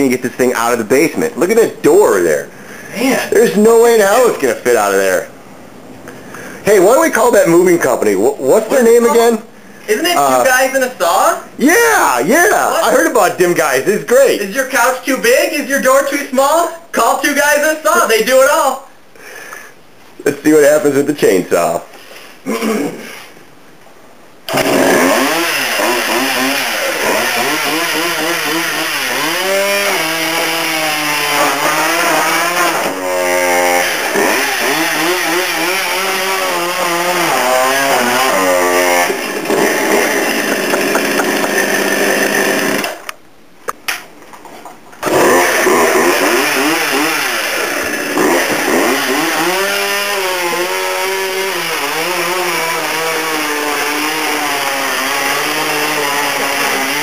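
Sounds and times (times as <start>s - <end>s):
chainsaw revving: 24.5s - 43.0s, 45.0s - 57.0s.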